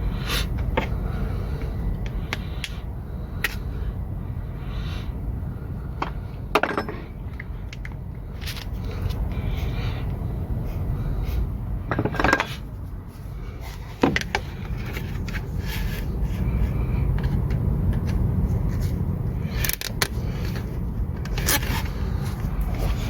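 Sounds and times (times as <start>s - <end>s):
steady low rumble: 0.0s - 23.0s
metal tools clinking on engine parts: 6.0s - 9.2s, 11.8s - 12.7s.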